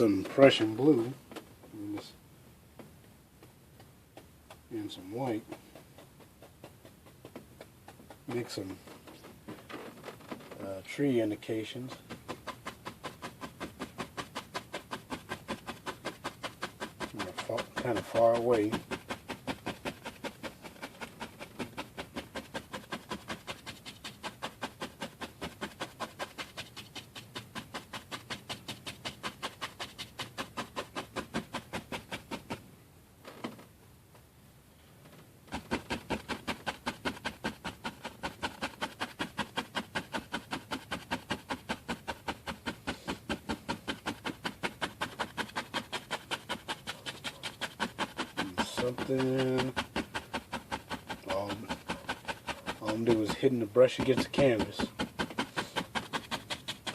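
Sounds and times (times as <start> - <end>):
paintbrush tapping on canvas: 5.3 - 8.4.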